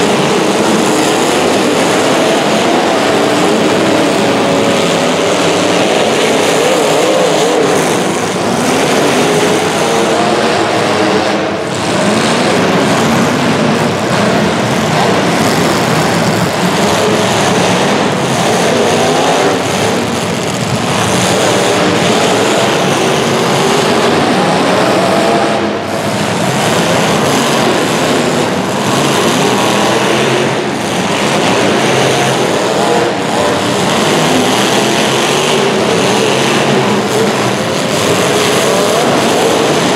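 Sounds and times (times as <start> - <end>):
racing engines: 0.0 - 39.9.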